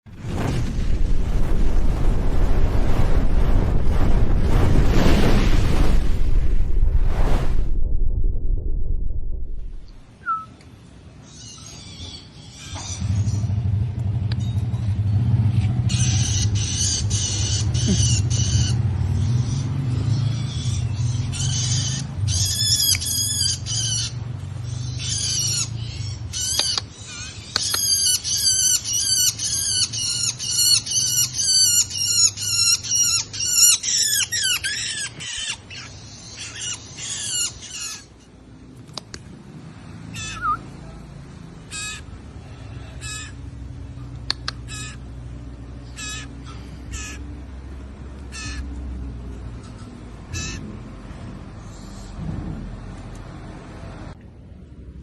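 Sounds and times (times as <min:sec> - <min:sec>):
low steady hum: 0:00.1 - 0:11.2.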